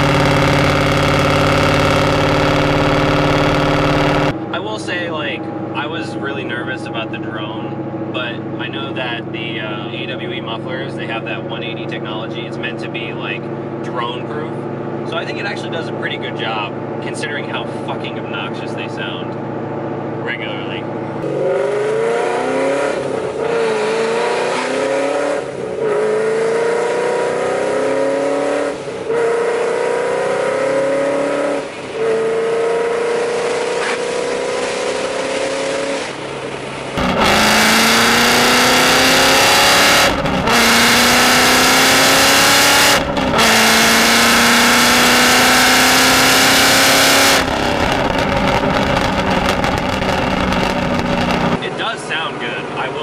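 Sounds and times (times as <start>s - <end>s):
car engine accelerating through gears: 0.0s - 4.4s, 21.0s - 36.2s, 36.8s - 51.7s.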